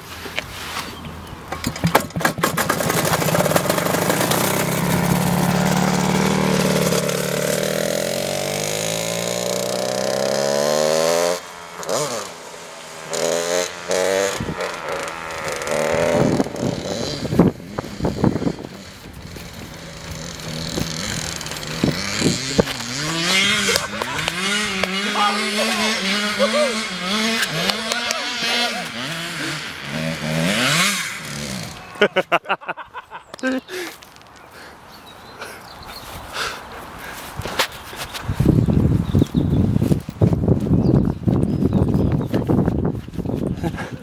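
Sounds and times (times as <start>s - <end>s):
go-kart engine revving: 1.5s - 32.2s.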